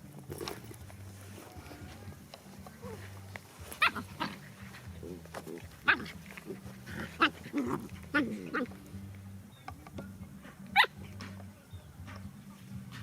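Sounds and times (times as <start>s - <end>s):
dog yipping: 3.7s - 4.5s, 5.7s - 8.8s, 10.7s - 11.1s.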